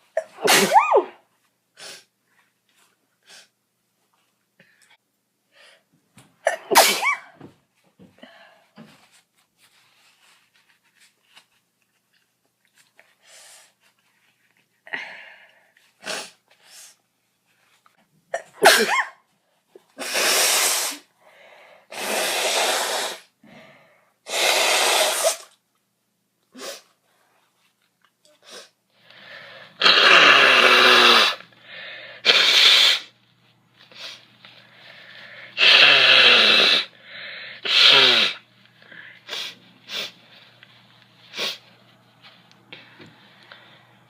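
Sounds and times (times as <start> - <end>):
girl sneezing: 0.2 - 1.2, 6.4 - 7.4, 18.4 - 19.2, 24.3 - 25.5, 29.8 - 31.4, 32.2 - 33.1, 35.6 - 36.9, 37.6 - 38.4
loud hissing bursts: 20.0 - 21.1, 21.9 - 23.3, 24.3 - 25.5, 32.2 - 33.1
breaths and sniffs: 33.8 - 44.0.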